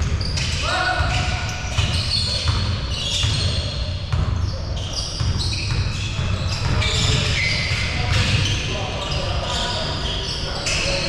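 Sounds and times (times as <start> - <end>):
basketball bouncing on gym floor: 0.0 - 4.6, 5.2 - 8.6.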